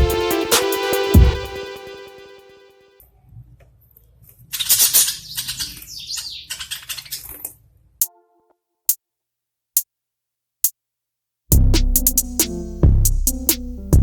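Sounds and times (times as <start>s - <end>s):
short musical note: 0.0s - 2.9s
budgies chattering and chirping: 4.6s - 7.2s.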